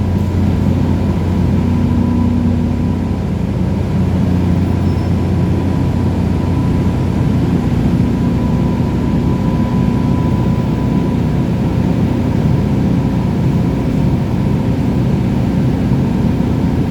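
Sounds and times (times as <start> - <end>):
thin whine: 0.0 - 12.2
diesel engines droning: 0.0 - 16.9.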